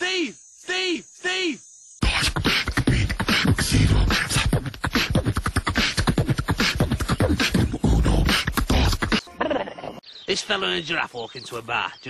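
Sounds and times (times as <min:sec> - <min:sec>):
beatboxing mouth noises: 0:02.0 - 0:09.3.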